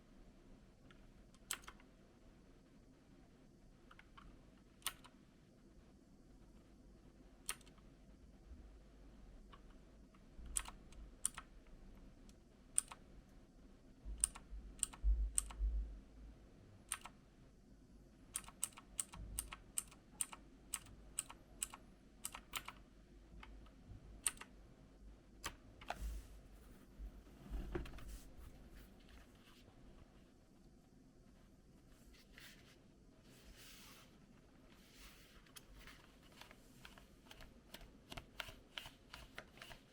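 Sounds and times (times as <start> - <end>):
clicky mechanical keyboard presses: 1.4 - 1.8, 10.5 - 11.5, 14.2 - 15.6, 16.9 - 17.1, 18.4 - 22.8, 24.2 - 24.5.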